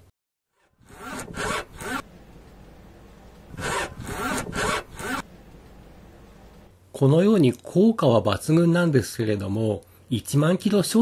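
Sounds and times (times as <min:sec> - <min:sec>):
rubber bushings creaking: 0:03.5 - 0:05.3.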